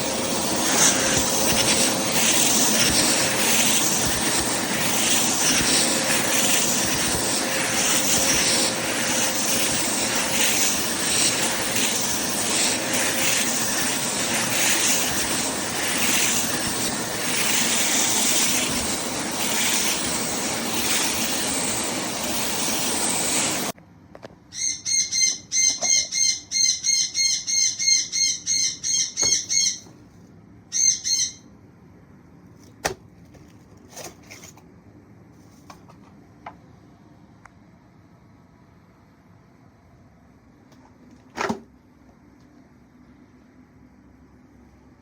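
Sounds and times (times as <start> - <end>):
carpet cleaner motor and suction: 0.0 - 23.8
high chirps: 24.5 - 29.9.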